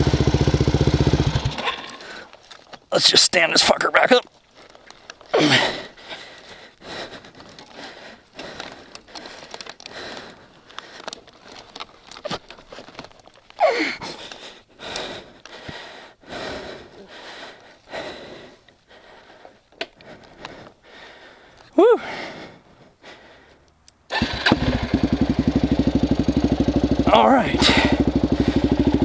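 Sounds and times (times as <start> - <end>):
person panting hard: 1.4 - 2.5, 4.4 - 23.7, 27.6 - 29.0
crackling and clicks of brush: 1.6 - 2.9, 3.9 - 16.0, 17.1 - 20.8, 21.4 - 21.7.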